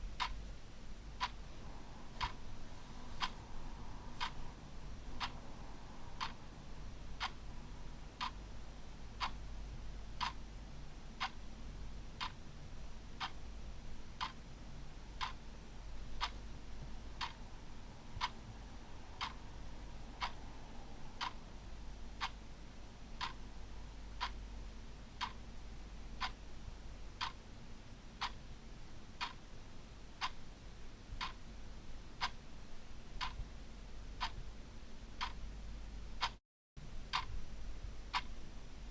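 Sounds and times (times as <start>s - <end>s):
clock ticking: 1.2s - 1.4s, 2.1s - 3.5s, 4.1s - 5.4s, 6.0s - 6.4s, 7.1s - 7.5s, 8.2s - 8.4s, 9.2s - 9.4s, 10.2s - 10.4s, 11.2s - 11.4s, 12.2s - 12.4s, 14.2s - 14.4s, 15.2s - 15.4s, 16.2s - 16.4s, 17.2s - 17.4s, 18.2s - 18.4s, 19.2s - 19.4s, 20.2s - 20.4s, 22.2s - 22.4s, 23.2s - 23.4s, 24.2s - 24.4s, 25.2s - 25.4s, 26.2s - 26.4s, 27.2s - 27.4s, 29.2s - 29.5s, 31.2s - 31.4s, 32.2s - 32.4s, 33.2s - 33.4s, 34.2s - 34.4s, 35.2s - 35.4s, 36.2s - 36.4s, 37.1s - 37.4s.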